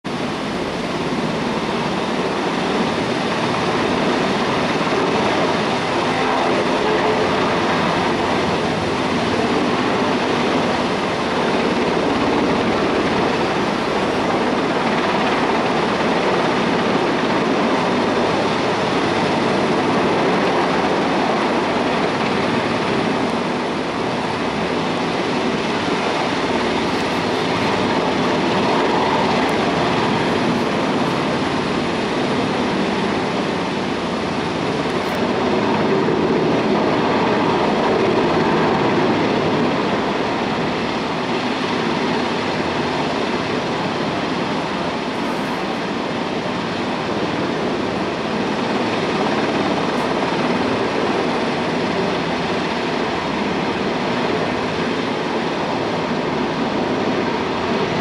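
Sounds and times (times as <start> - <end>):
helicopter engine and rotor: 0.0 - 58.0.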